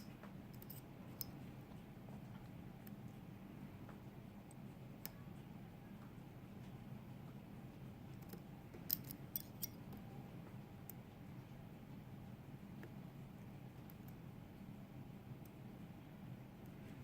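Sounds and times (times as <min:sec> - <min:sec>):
faint steady hum: 0:00.0 - 0:17.0
lock pick clicking in lock: 0:08.2 - 0:09.8.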